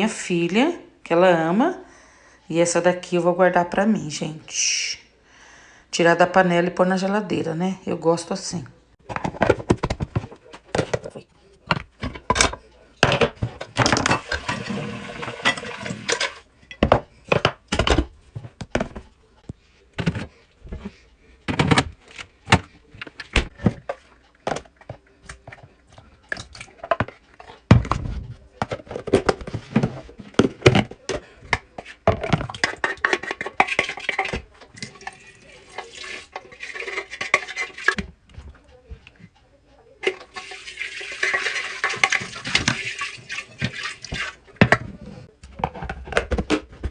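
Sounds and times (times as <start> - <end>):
pots and dishes clattering: 9.0 - 19.0, 20.0 - 38.6, 40.0 - 46.9.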